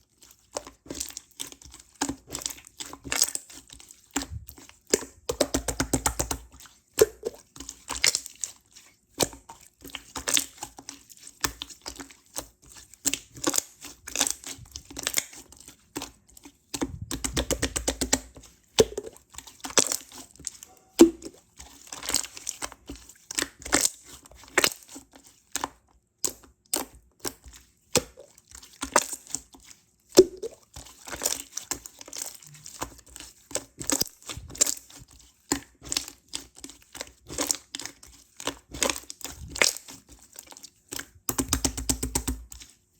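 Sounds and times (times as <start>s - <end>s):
slime kneaded with sticky crackles: 0.0s - 42.9s
air bubbles popping in slime: 7.0s - 7.4s, 18.8s - 19.2s, 21.0s - 21.4s, 30.2s - 30.6s.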